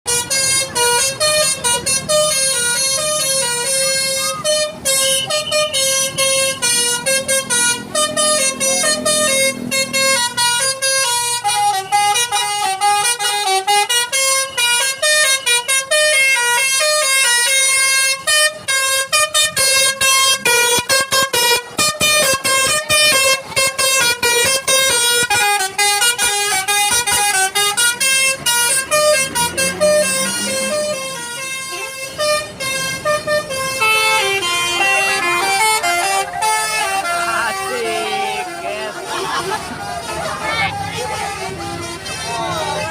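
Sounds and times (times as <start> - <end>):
multi-tone bus horn melody: 0.0 - 42.9
low engine rumble: 0.1 - 42.9.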